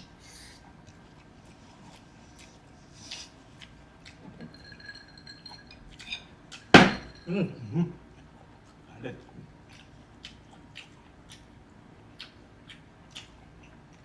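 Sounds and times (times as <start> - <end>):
faint chewing: 0.0 - 6.7, 8.1 - 14.0
utensils scraping on dishes: 4.2 - 7.4.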